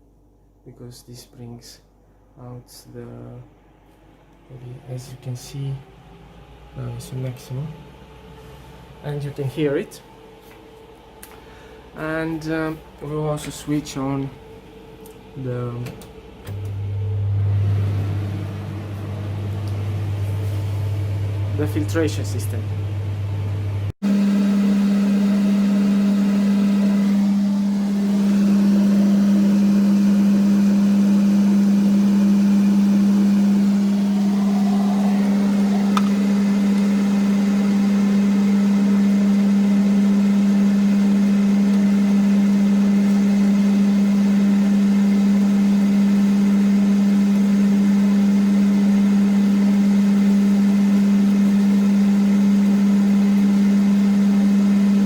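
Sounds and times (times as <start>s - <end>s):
extractor hood fan humming: 33.2s - 38.4s.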